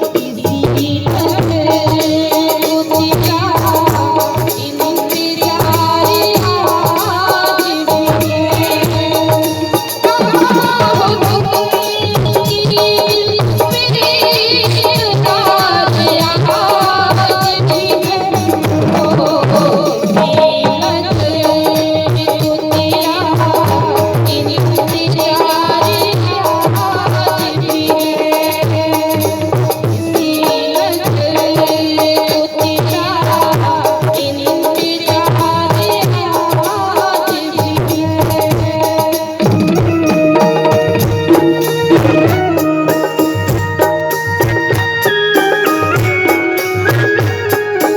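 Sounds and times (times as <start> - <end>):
tabla beat: 0.0 - 47.9
sustained melodic line: 39.5 - 47.9.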